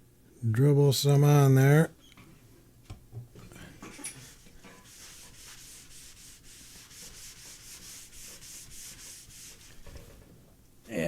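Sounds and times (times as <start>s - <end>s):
rag scrubbing wood: 4.2s - 10.1s.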